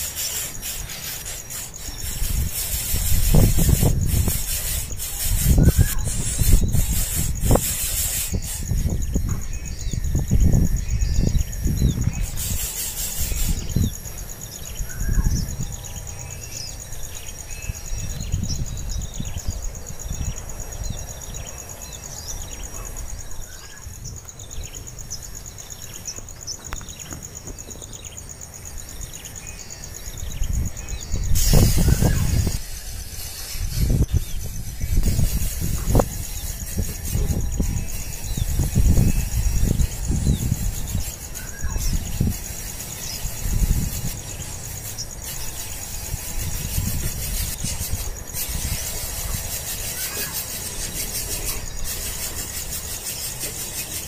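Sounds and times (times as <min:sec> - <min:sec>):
rustling noise: 0:00.0 - 0:09.5, 0:11.9 - 0:14.0, 0:30.6 - 0:54.0
birds chirping: 0:00.0 - 0:54.0.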